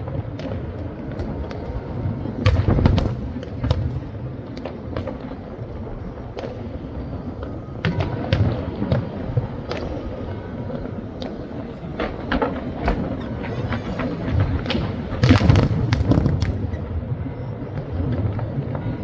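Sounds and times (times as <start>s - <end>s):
deep fireworks booms: 0.0s - 19.0s
fireworks cracking bangs: 0.0s - 19.0s.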